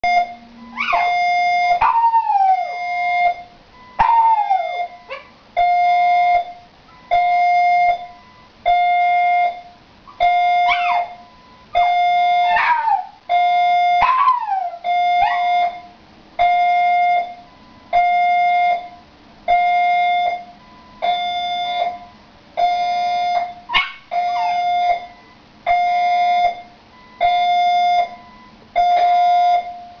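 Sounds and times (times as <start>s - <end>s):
fire alarm beeping: 0.0s - 1.9s, 2.6s - 30.0s
puppy howling: 0.8s - 1.2s, 1.8s - 2.8s, 4.0s - 5.3s, 10.7s - 11.2s, 12.5s - 13.2s, 14.0s - 15.5s, 23.7s - 24.7s.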